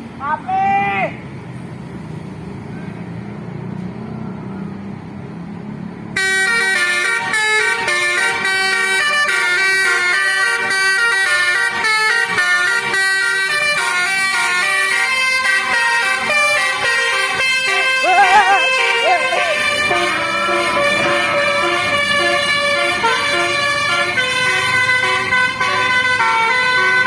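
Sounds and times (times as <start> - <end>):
bus engine rumble: 0.0 - 27.0
multi-tone air horn melody: 6.2 - 27.0.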